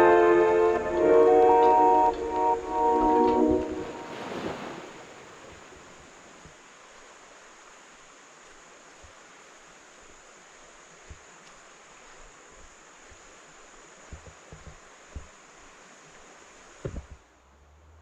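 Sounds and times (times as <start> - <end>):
river water flowing over rocks: 0.0 - 14.1.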